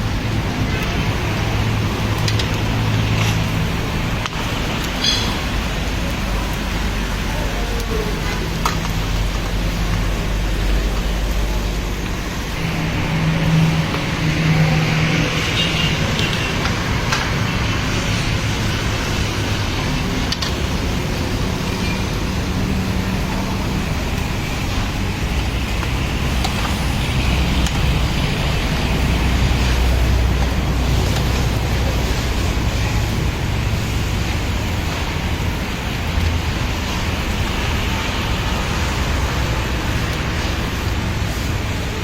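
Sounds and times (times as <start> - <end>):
steady hiss: 0.0 - 42.0
vehicle engines passing: 0.0 - 42.0.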